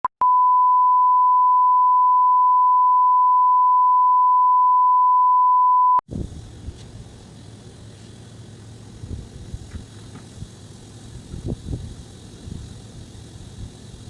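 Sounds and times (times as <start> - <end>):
electronic beep tone: 0.2 - 6.0.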